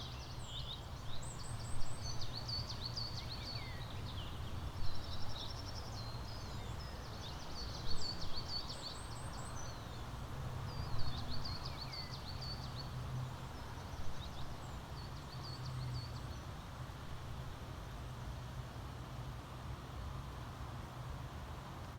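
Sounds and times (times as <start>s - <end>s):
songbirds chirping: 0.0s - 16.8s.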